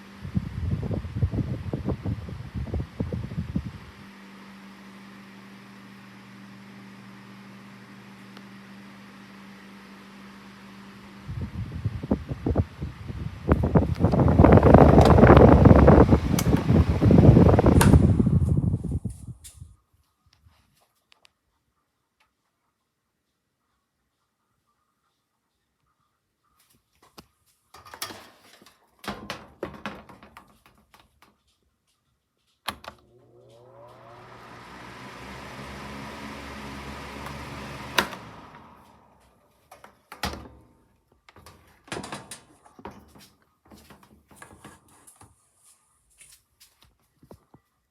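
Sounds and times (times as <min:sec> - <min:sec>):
table fan motor humming: 0:00.0 - 0:19.0, 0:32.9 - 0:39.9.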